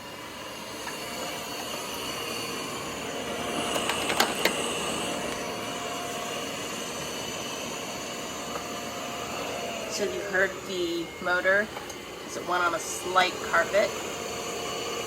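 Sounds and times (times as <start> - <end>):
robot vacuum whirring: 0.0 - 15.0
debris clicking in vacuum: 3.6 - 4.6.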